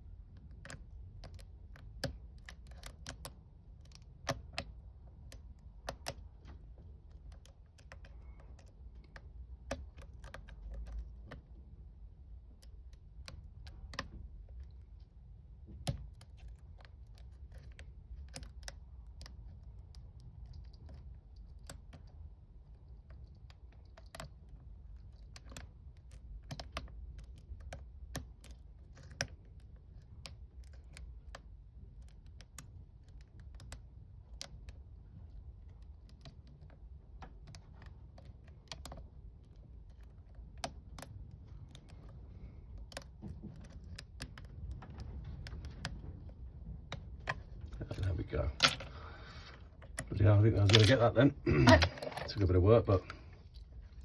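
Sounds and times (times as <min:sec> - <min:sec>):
lock pick clicking in padlock: 0:00.4 - 0:06.4, 0:23.0 - 0:31.4, 0:46.9 - 0:52.4.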